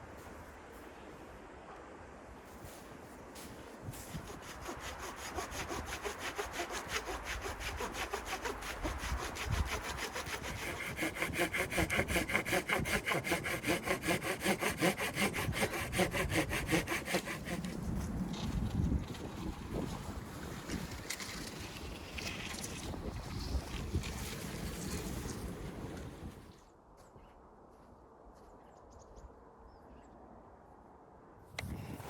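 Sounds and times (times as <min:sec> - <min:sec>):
hand saw cutting wood: 0:03.9 - 0:19.2.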